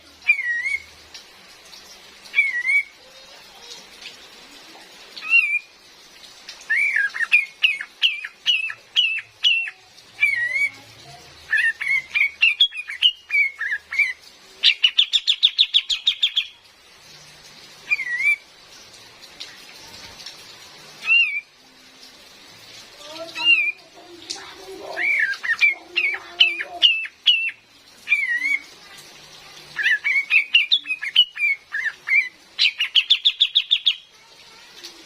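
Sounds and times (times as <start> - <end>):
rain hiss: 0.0 - 35.0
songbird whistled calls and trill: 0.2 - 0.9, 2.3 - 2.9, 11.5 - 16.6, 17.9 - 18.4, 25.0 - 28.6, 29.8 - 34.1.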